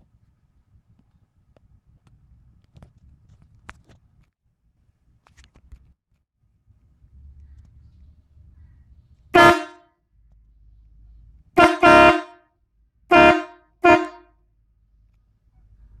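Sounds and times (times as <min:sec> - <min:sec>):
faint low rumble: 0:00.0 - 0:09.4, 0:10.0 - 0:11.6, 0:14.5 - 0:16.0
air horn blasts: 0:09.4 - 0:09.9, 0:11.6 - 0:12.4, 0:13.1 - 0:14.4.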